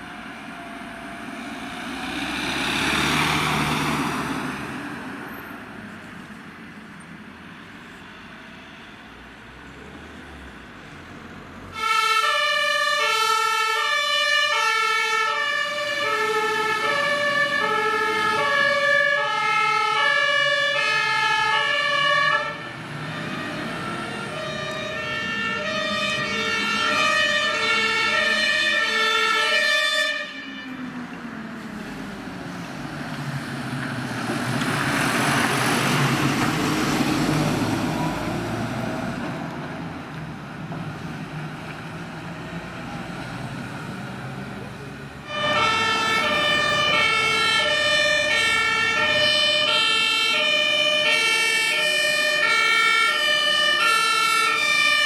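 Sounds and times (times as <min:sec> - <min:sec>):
vehicle engine and road noise: 0:00.0 - 0:55.0
fire engine two-tone siren: 0:11.7 - 0:32.9, 0:45.2 - 0:55.0.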